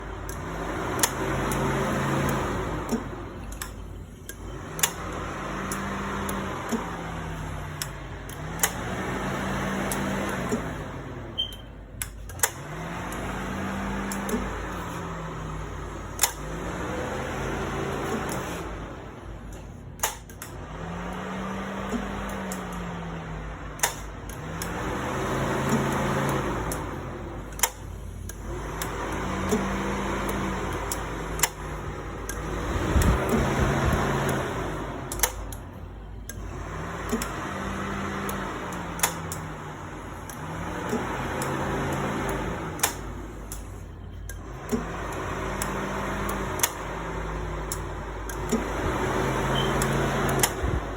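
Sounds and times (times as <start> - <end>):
sharp click: 0.2 - 5.1, 7.8 - 8.8, 16.1 - 16.4, 19.4 - 20.6, 23.8 - 24.8, 35.1 - 36.4, 38.2 - 39.5, 40.2 - 46.8, 49.5 - 50.8
car engine turning over: 12.0 - 50.9.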